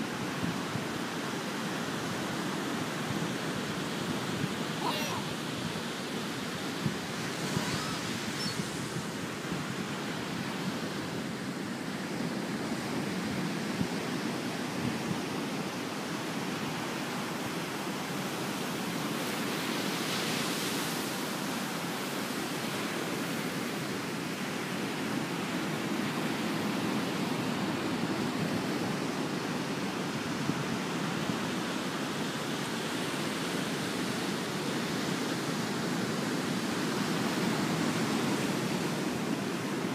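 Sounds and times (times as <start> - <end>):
ocean surf rushing: 3.8 - 10.4.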